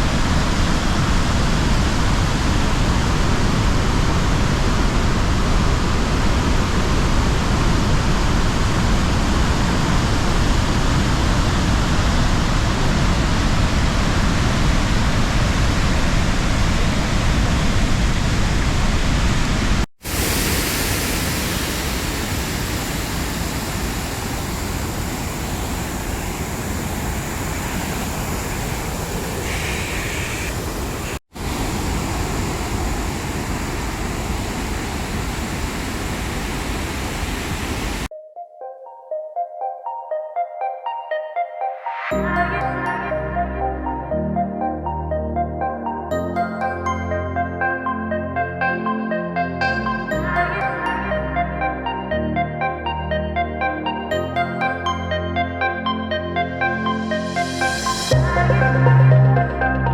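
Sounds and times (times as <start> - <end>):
waterfall roaring: 0.0 - 38.1.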